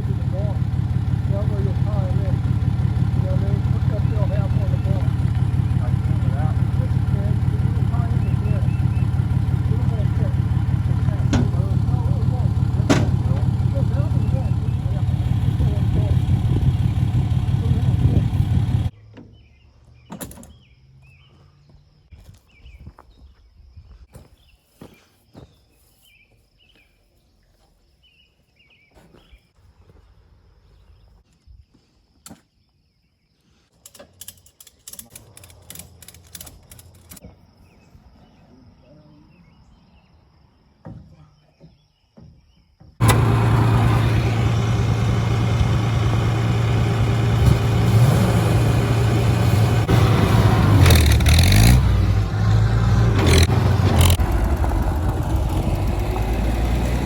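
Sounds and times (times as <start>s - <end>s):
tractor engine running: 0.0s - 18.9s, 43.0s - 57.0s.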